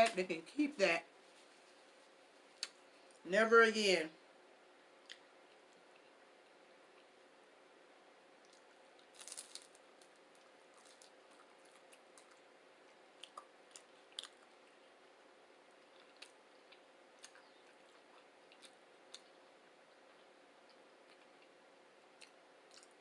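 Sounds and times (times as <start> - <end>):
faint steady hum: 0.0 - 23.0
crunching while chewing: 5.0 - 7.2, 8.4 - 23.0.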